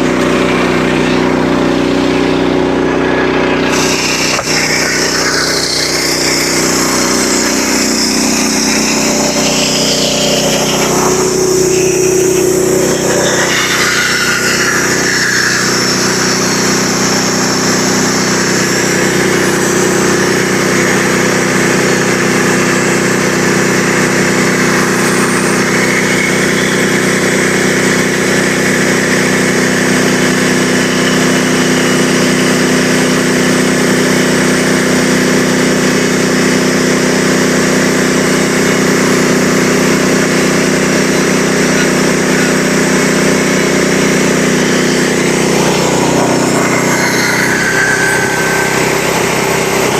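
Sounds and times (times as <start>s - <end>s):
sawmill engine running: 0.0s - 49.9s.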